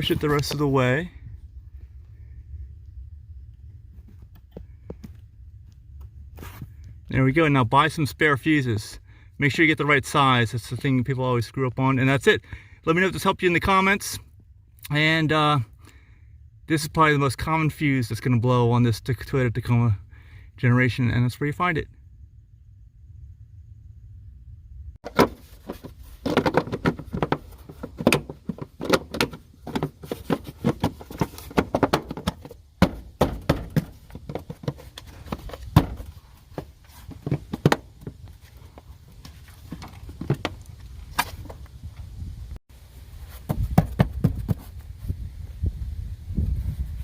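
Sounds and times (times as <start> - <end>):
low rumble: 21.9 - 25.0
clicks knocks and thuds: 25.0 - 41.7, 43.5 - 44.7.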